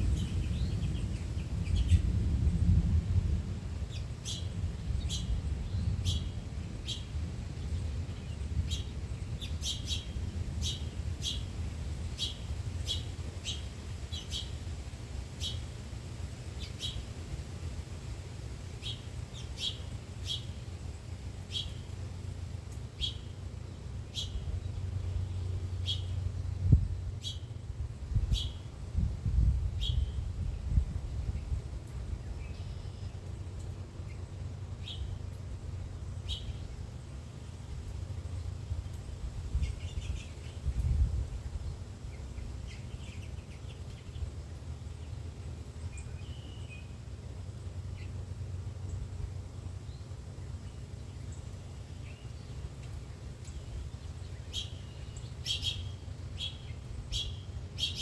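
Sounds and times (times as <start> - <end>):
bird chirping: 0.0 - 2.1, 3.9 - 11.5, 12.2 - 14.6, 15.4 - 15.6, 16.6 - 17.0, 18.8 - 22.0, 22.9 - 27.6, 28.2 - 28.7, 29.8 - 30.2, 32.2 - 35.3, 36.2 - 36.8, 37.8 - 47.0, 49.8 - 58.0
steady low rumble: 0.0 - 57.9.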